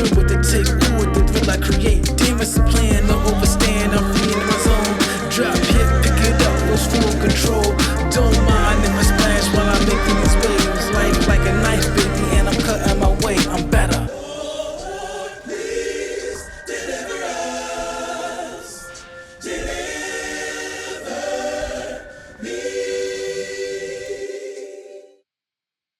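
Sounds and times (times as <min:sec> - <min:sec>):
heavy hip-hop beat: 0:00.0 - 0:14.1
choir-like sung chords: 0:00.0 - 0:25.2.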